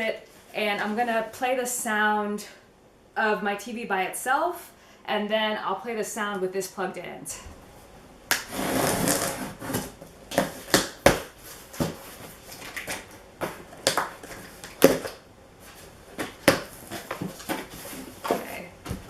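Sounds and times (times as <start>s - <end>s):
cardboard rustling and scraping: 8.5s - 15.0s, 15.6s - 19.0s.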